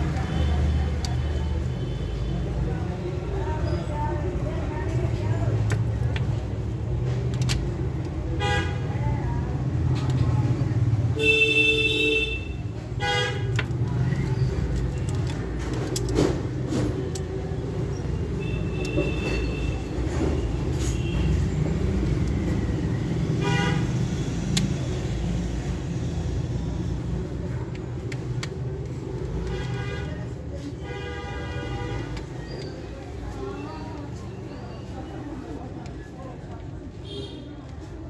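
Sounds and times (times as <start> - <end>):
road traffic rumbling: 0.0 - 38.0
vehicle horn honks: 11.2 - 13.4.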